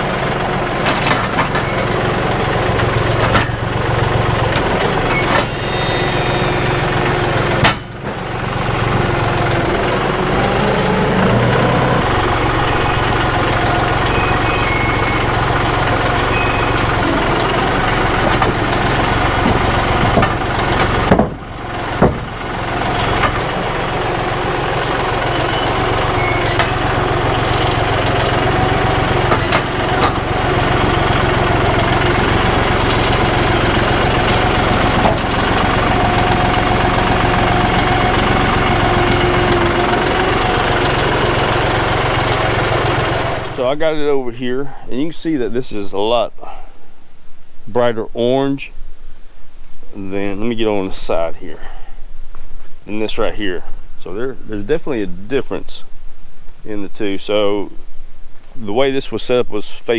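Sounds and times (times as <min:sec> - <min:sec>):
tractor engine running: 0:00.0 - 0:46.6.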